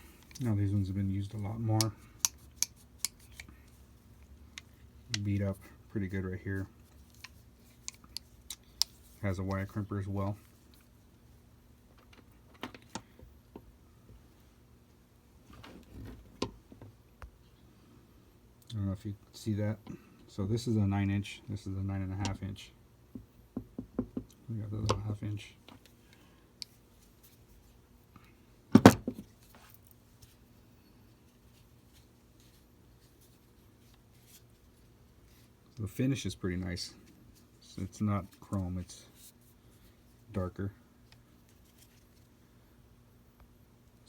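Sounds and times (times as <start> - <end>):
faint steady hum: 0.0 - 44.0.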